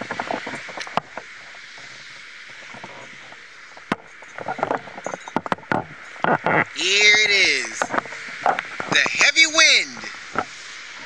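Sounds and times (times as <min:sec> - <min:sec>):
strong wind blowing: 0:05.8 - 0:10.4.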